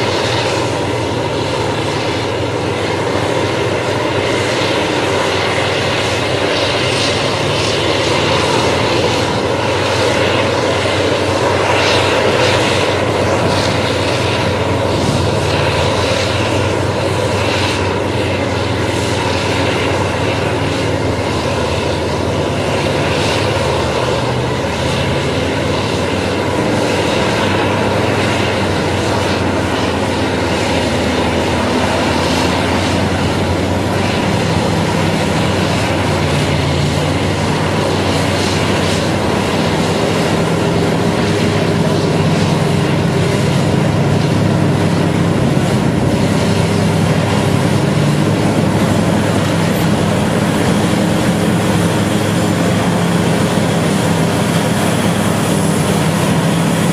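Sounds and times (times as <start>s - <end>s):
bulldozer diesel engine droning: 0.0s - 56.9s.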